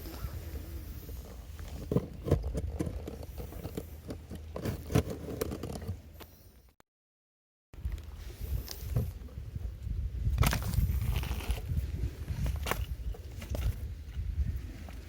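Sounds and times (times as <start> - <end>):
crunching and scraping handling: 10.4 - 13.9.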